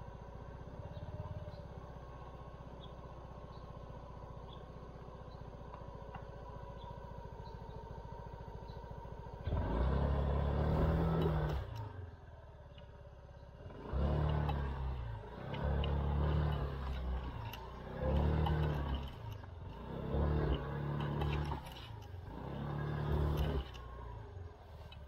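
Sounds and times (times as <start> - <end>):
scooter engine revving: 6.8 - 12.2, 13.6 - 25.0.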